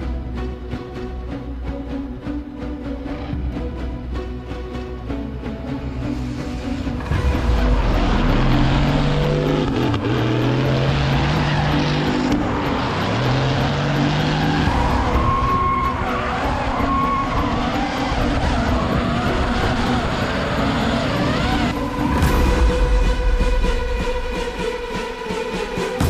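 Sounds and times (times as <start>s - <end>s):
car engines revving: 2.1s - 22.3s
rush of tyres: 5.9s - 22.2s.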